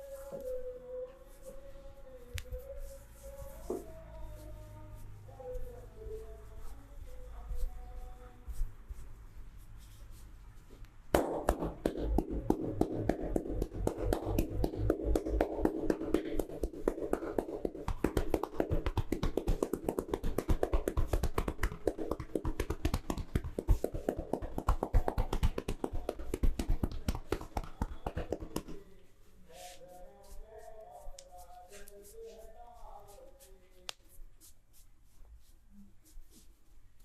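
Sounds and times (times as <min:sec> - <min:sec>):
hands tapping and slapping skin: 0:11.1 - 0:28.8.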